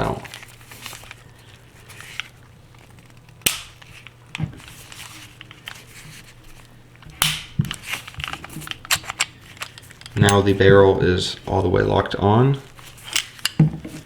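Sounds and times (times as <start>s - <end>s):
pistol parts clicking: 3.0s - 10.7s, 12.7s - 14.0s.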